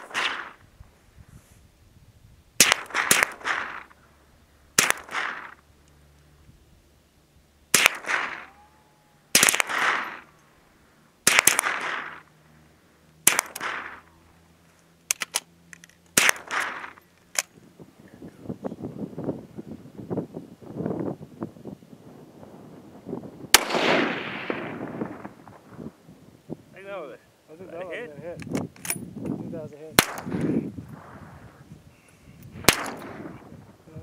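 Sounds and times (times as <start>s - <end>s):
rifle shots with echo: 0.0s - 0.6s, 2.6s - 4.0s, 4.8s - 5.6s, 7.7s - 8.7s, 9.3s - 10.4s, 11.2s - 12.3s, 13.2s - 14.1s, 16.2s - 17.0s, 23.5s - 25.6s, 30.0s - 31.2s, 32.6s - 33.5s.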